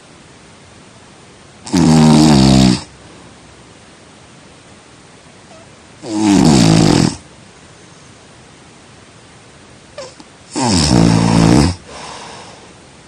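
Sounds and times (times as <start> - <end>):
person snoring loudly: 1.6 - 2.9, 6.0 - 7.2, 10.0 - 12.4
soft breath: 11.8 - 12.8.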